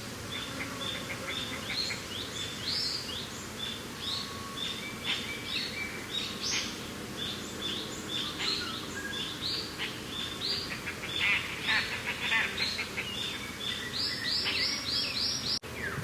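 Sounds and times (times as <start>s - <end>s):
birds chirping and singing: 0.3s - 16.0s.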